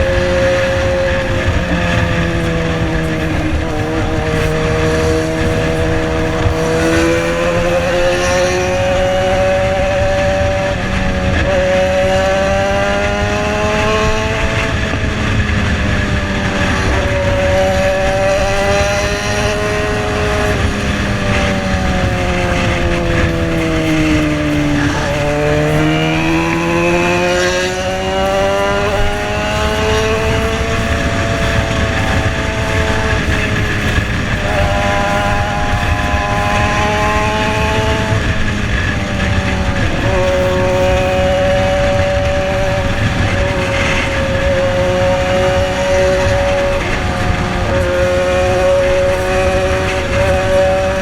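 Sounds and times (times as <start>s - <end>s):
motorcycle engine: 0.0s - 51.0s
wind rush on microphone: 0.0s - 51.0s.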